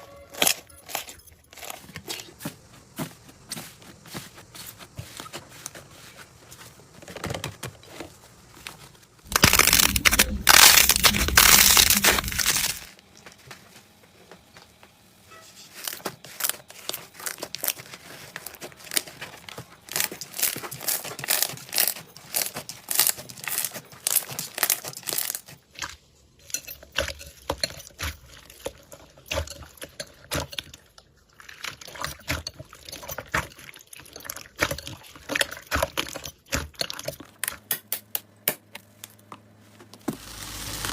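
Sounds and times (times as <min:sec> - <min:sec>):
dense crunching: 0:00.3 - 0:06.8, 0:07.8 - 0:13.0, 0:15.7 - 0:36.1, 0:40.0 - 0:40.9
slime squeezed crackling and popping: 0:09.3 - 0:12.9.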